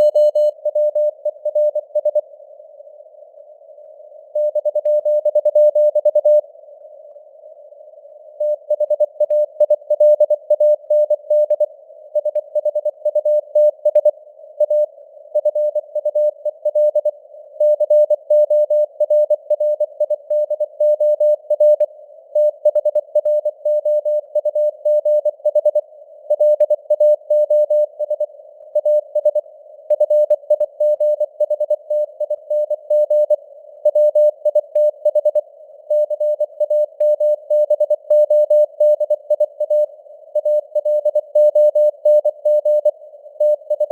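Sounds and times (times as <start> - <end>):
morse code beeps: 0.0 - 2.2
faint radio hiss: 6.3 - 8.7.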